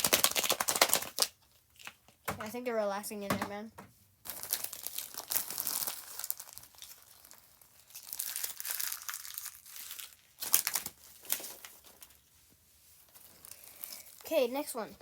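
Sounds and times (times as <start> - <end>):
plastic packaging crinkling: 0.0 - 2.3, 4.2 - 12.3, 13.1 - 14.3.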